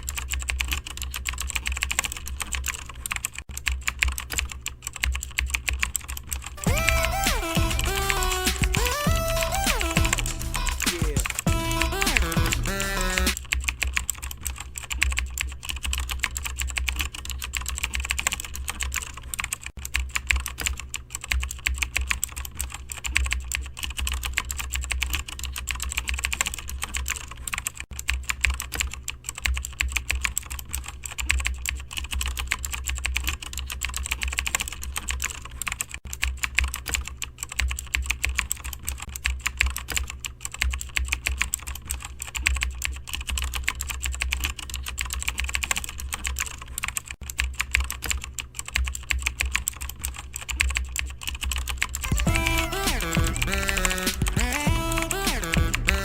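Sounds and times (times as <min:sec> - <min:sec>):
fast typing on keyboard: 0:00.0 - 0:56.0
steady low hum: 0:05.2 - 0:20.1, 0:51.0 - 0:56.0.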